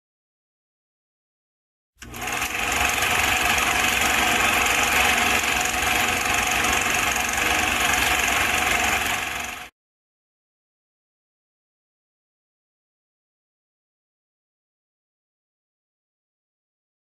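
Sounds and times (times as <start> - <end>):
small machine clattering: 2.0 - 9.7.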